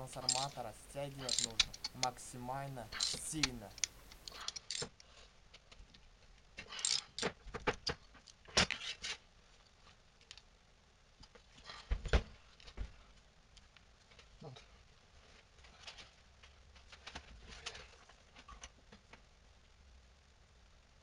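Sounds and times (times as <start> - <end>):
metallic tool clinks and knocks: 0.0 - 2.2, 2.9 - 4.8.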